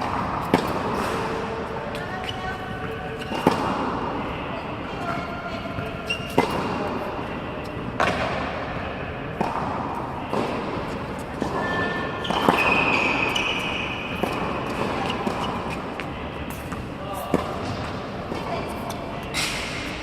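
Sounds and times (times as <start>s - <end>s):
tennis balls bouncing on court: 0.0s - 1.0s, 1.9s - 4.2s, 5.0s - 6.9s, 7.9s - 8.5s, 9.3s - 19.0s
tennis balls struck with rackets: 0.0s - 1.4s, 2.8s - 4.2s, 7.9s - 8.6s, 9.3s - 11.6s, 12.2s - 20.0s.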